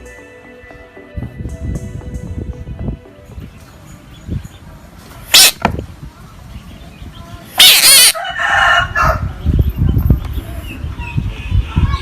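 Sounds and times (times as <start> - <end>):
harsh animal cries: 7.6 - 8.2.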